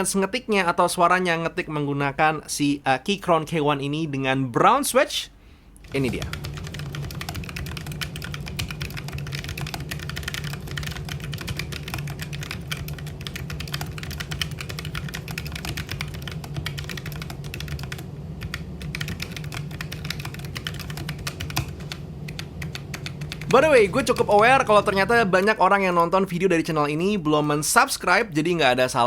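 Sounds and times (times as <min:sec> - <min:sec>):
fast mechanical keyboard typing: 0:05.8 - 0:27.7.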